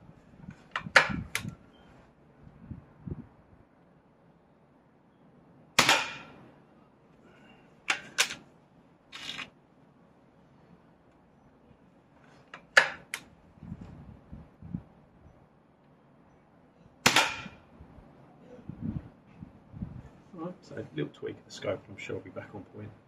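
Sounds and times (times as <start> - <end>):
air rifle shot crack: 5.8 - 6.4, 17.0 - 17.6.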